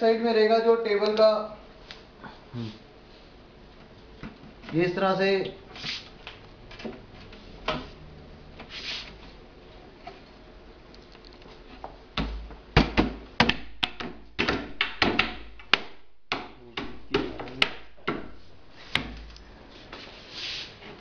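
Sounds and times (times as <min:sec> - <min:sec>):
table panels knocking: 0:12.2 - 0:18.4.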